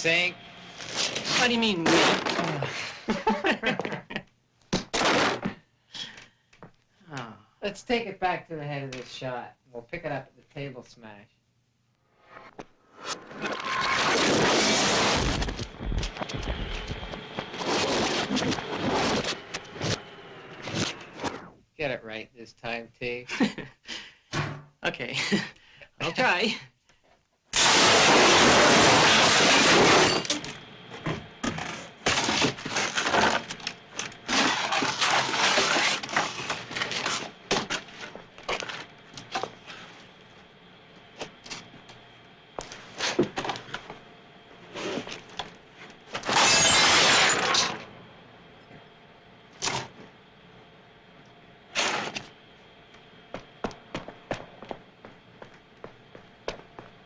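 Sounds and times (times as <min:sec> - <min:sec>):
table breaking crash: 0:04.8 - 0:05.5, 0:27.6 - 0:30.5, 0:46.2 - 0:47.8
sharp hits and cracks: 0:27.5 - 0:30.5.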